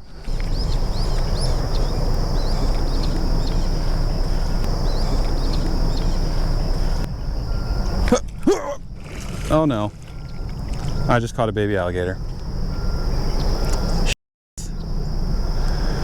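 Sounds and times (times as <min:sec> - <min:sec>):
bird chirps: 0:00.0 - 0:08.0, 0:10.1 - 0:11.1
high insect buzz: 0:00.0 - 0:08.2
steady low rushing noise: 0:00.0 - 0:13.6.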